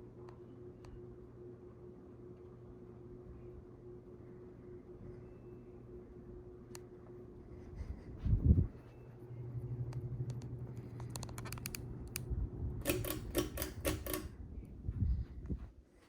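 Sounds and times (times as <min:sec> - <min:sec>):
ceiling fan motor humming: 0:00.0 - 0:16.0
sharp clicks: 0:10.3 - 0:14.3.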